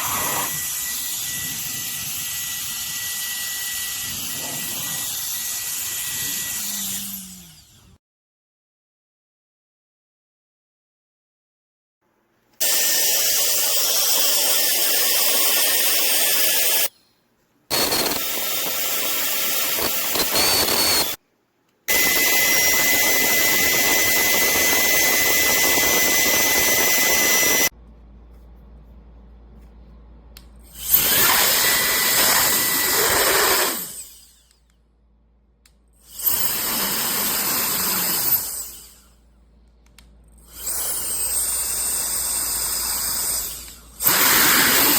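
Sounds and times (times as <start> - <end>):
electric air duster blowing: 0.0 - 7.2, 21.9 - 27.7, 44.1 - 44.9
high motor whine: 0.0 - 8.0, 21.9 - 27.7.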